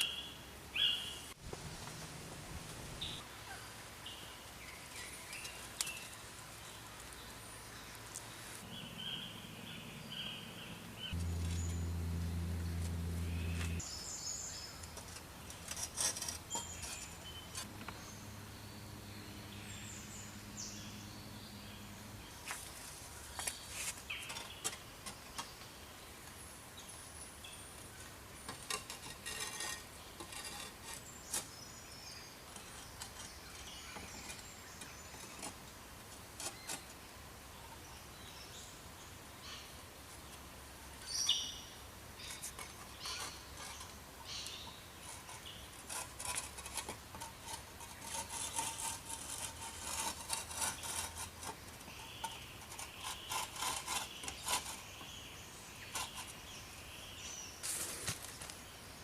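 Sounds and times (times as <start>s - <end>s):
small birds chirping: 0.0s - 1.4s, 2.9s - 59.0s
light knocks and scraping: 14.8s - 18.0s, 28.4s - 31.6s, 42.2s - 55.2s.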